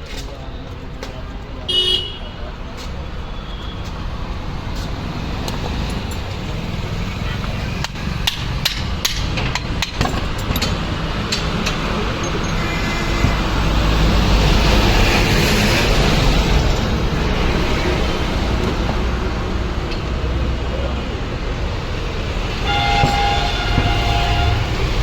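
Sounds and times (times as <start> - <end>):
heavy traffic rumble: 0.0 - 25.0
vehicle horn: 1.7 - 2.4, 22.6 - 25.0.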